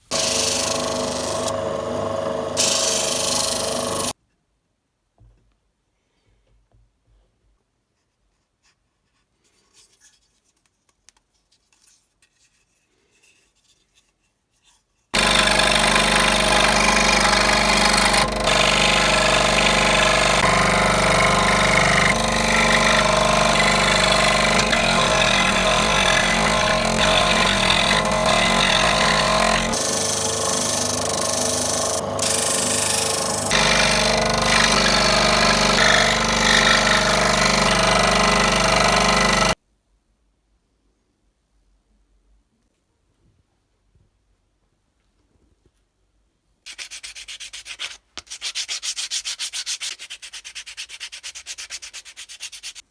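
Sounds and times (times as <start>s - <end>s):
power tool running: 0.0s - 4.2s, 15.2s - 39.6s.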